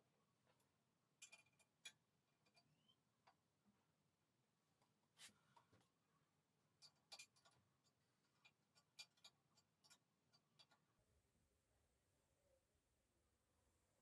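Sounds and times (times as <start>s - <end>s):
faint small clicks and taps: 0.4s - 3.8s, 6.8s - 10.9s.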